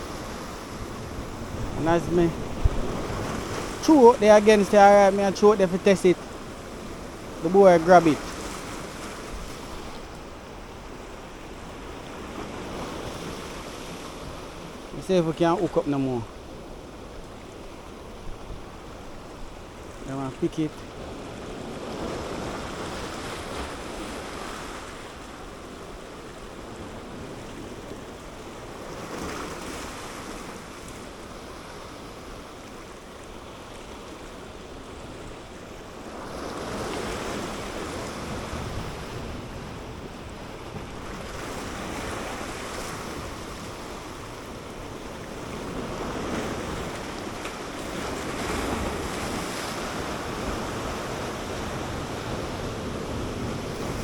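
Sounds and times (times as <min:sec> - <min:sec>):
wind buffeting microphone: 0:00.0 - 0:11.0
surf washing against rocks: 0:00.0 - 0:54.0.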